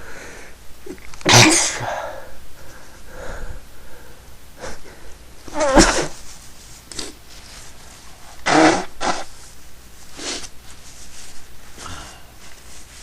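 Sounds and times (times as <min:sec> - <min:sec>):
person sneezing: 0:01.2 - 0:02.3, 0:05.5 - 0:06.2, 0:08.4 - 0:09.3
sniffs or breaths: 0:10.1 - 0:10.5.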